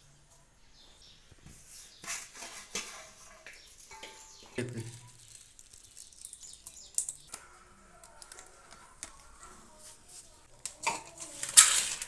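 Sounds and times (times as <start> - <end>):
faint background music: 0.0 - 12.0
utensils tapping cookware: 2.0 - 7.5, 10.6 - 12.0.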